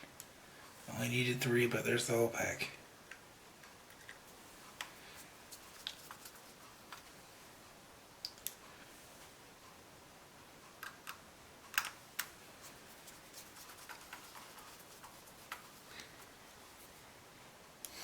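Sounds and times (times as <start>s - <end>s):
small plastic parts clicking: 10.8s - 12.3s.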